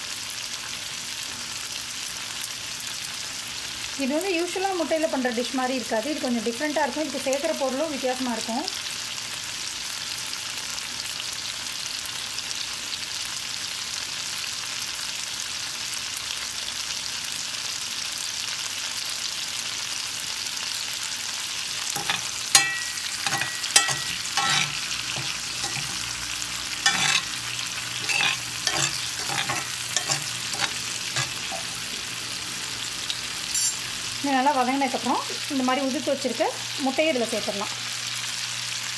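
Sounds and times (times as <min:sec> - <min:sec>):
tomatoes sizzling in a pan: 0:00.0 - 0:38.9
utensil scraping a pan: 0:21.8 - 0:32.5.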